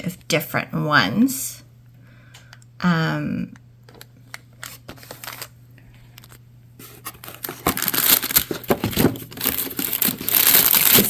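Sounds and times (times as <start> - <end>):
packaging tearing and crinkling: 4.6 - 5.5, 7.0 - 11.0.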